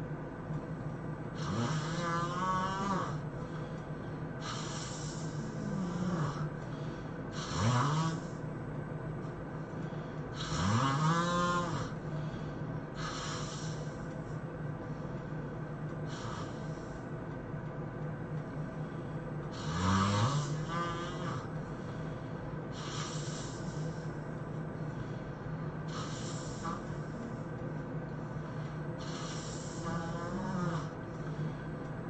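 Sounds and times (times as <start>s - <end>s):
steady low hum: 0.0s - 32.0s
person snoring: 1.4s - 3.3s, 4.4s - 8.4s, 10.3s - 14.1s, 16.1s - 17.0s, 19.5s - 24.2s, 25.9s - 27.5s, 28.3s - 31.7s.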